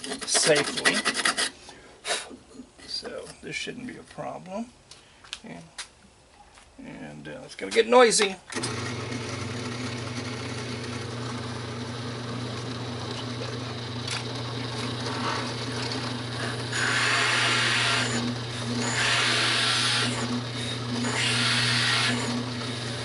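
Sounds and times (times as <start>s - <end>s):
hole saw cutting plywood: 0.0s - 1.5s, 8.6s - 23.0s
drill press motor hum: 8.5s - 23.0s.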